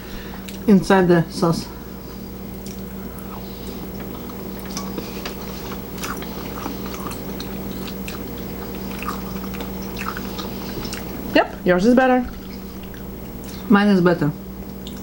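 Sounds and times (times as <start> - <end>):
steady low hum: 0.0 - 15.0
small mouth clicks: 2.6 - 11.2
wet chewing and mouth smacks: 2.6 - 11.6, 12.2 - 13.7, 14.7 - 15.0.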